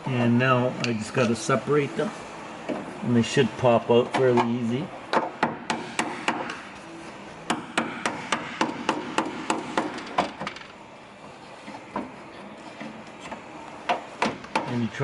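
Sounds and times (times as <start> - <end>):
hammer blows on car body panel: 5.1 - 6.6, 7.5 - 10.5, 13.9 - 14.7.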